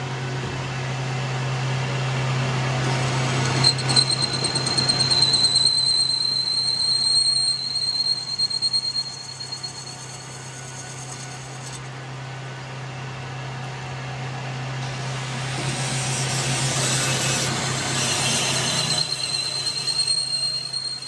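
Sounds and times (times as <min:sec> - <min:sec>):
high-pitched mechanical whine: 0:00.0 - 0:21.0.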